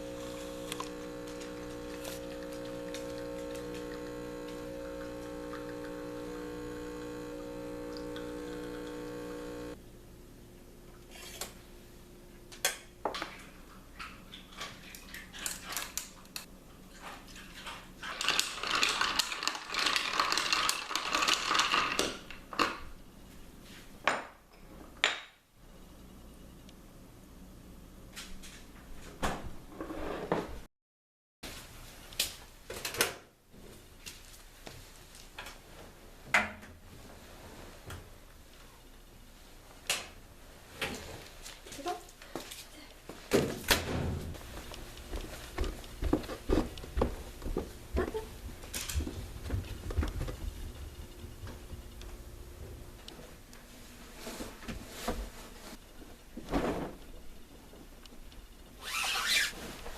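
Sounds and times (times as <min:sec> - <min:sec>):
kitchen appliance humming: 0:00.0 - 0:09.8.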